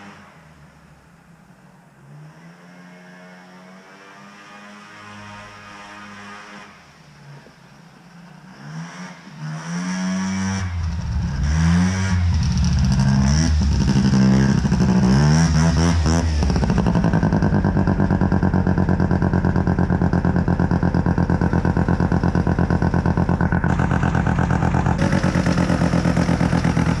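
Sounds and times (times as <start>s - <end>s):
rotary engine revving: 8.4s - 27.0s.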